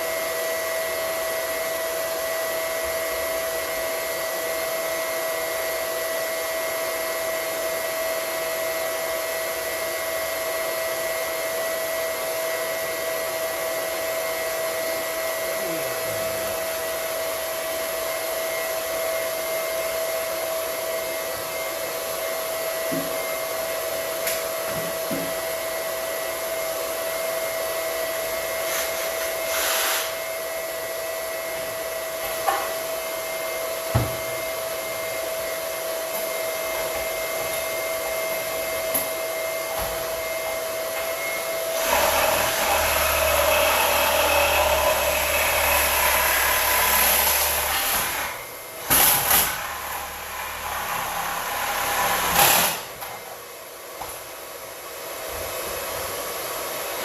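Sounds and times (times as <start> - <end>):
electric water pump whining: 41.4 - 53.0.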